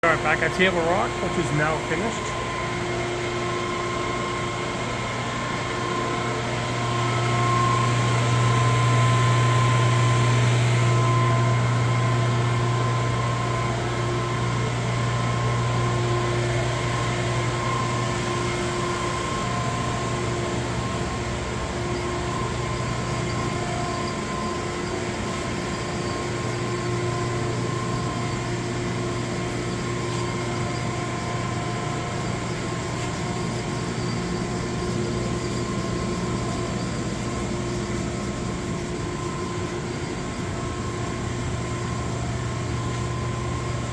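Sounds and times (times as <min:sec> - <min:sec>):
boiler room machinery hum: 0:00.0 - 0:43.9
thin steady whining tones: 0:00.0 - 0:43.9.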